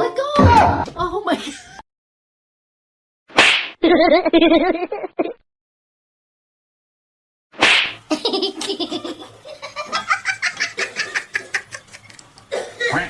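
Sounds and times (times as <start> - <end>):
child laughing: 3.8 - 5.4, 8.1 - 13.0.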